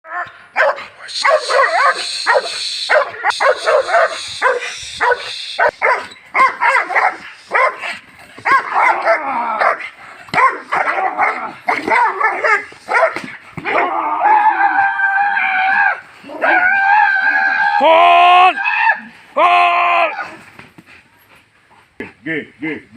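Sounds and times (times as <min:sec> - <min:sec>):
dog barking and yelping: 0:00.1 - 0:14.5.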